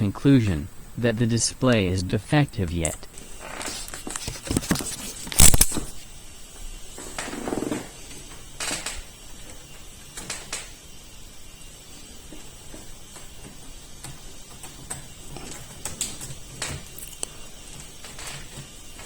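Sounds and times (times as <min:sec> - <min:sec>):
scraping rustle: 0:03.1 - 0:06.1.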